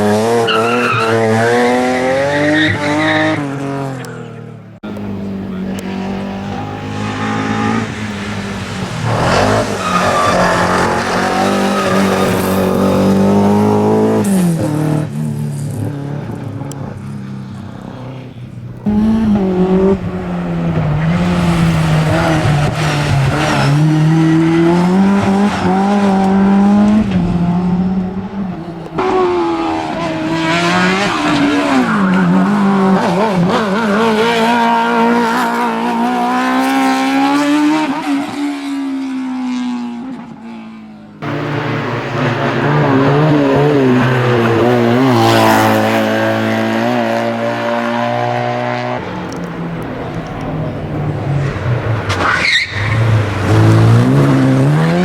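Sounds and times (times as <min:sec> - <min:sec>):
racing car engines revving: 0:00.0 - 0:55.0
tyre squeal: 0:06.5 - 0:13.1, 0:52.1 - 0:53.2.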